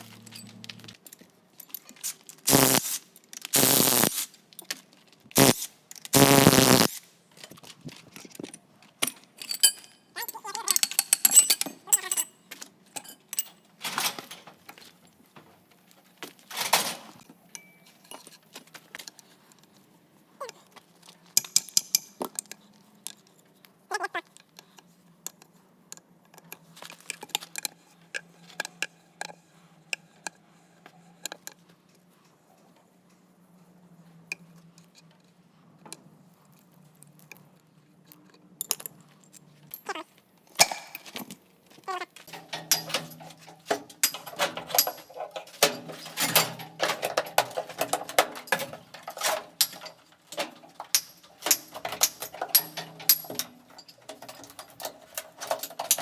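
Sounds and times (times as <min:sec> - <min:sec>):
metal tools clinking and knocking: 0:00.0 - 0:02.8, 0:07.4 - 0:15.0, 0:16.5 - 0:19.2, 0:21.4 - 0:22.6, 0:38.6 - 0:56.0.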